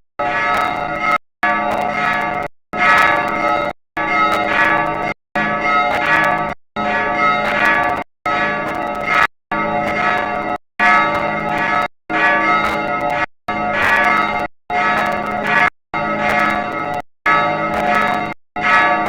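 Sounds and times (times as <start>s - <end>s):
church bells ringing: 6.8s - 8.6s.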